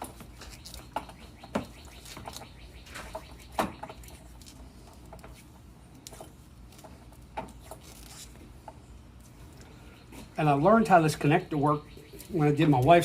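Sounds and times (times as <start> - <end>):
tape crackling and scratching: 0.0 - 10.3.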